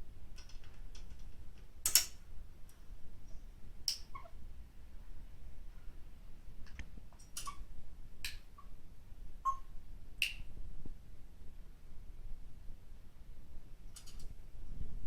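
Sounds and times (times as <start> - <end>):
parrot chirping: 4.0 - 4.4, 7.2 - 7.7, 9.4 - 9.7.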